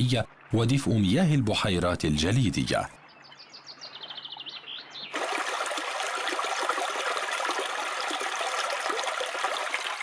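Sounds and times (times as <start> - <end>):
stream rushing: 5.1 - 10.0.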